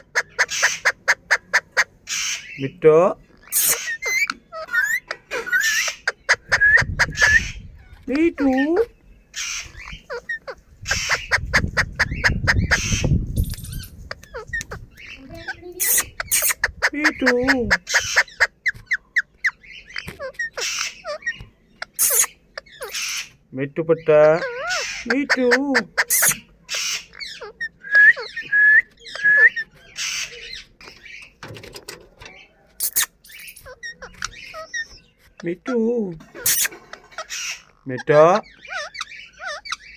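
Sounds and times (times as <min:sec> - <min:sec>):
parrot squawking and whistling: 0:03.4 - 0:07.6, 0:15.8 - 0:23.3, 0:24.4 - 0:30.4, 0:32.8 - 0:35.0, 0:36.4 - 0:37.7, 0:38.6 - 0:39.9
parrot whistled chirps: 0:27.8 - 0:29.7.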